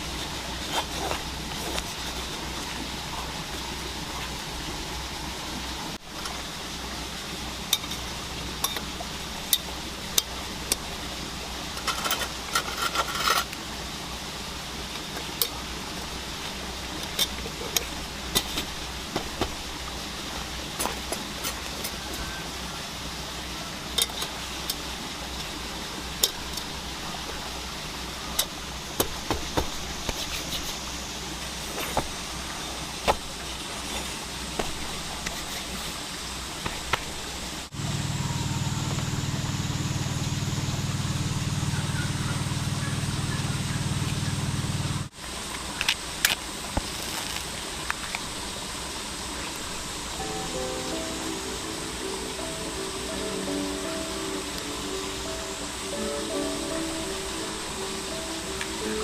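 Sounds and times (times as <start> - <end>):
steady background hiss: 0.0 - 59.0.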